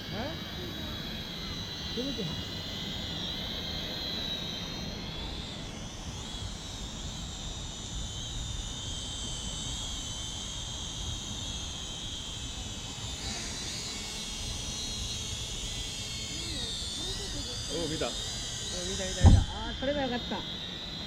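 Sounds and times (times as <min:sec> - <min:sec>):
drone propellers whining: 0:00.0 - 0:21.0.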